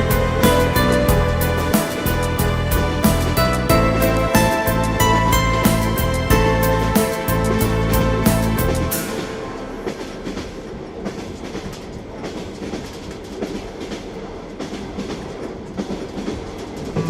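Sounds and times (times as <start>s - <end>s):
music: 0.0s - 10.6s
train wheels rumbling and clicking: 0.0s - 17.0s.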